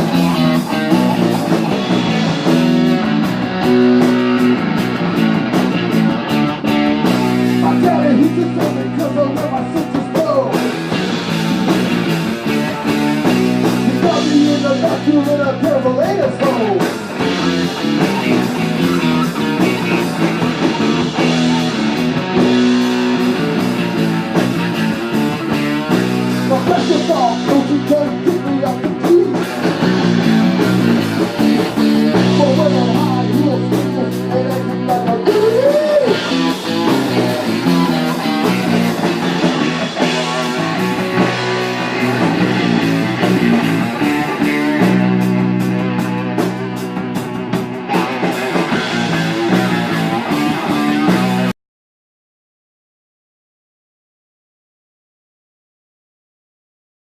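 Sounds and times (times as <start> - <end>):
guitar rock music: 0.0 - 51.6
person singing: 13.8 - 17.0, 26.5 - 29.6, 31.5 - 36.9.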